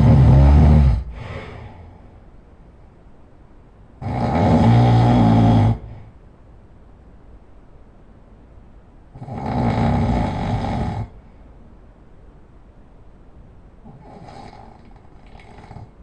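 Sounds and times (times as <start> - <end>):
person snoring loudly: 0.0 - 1.9, 4.0 - 6.0, 9.2 - 11.2, 13.8 - 15.9.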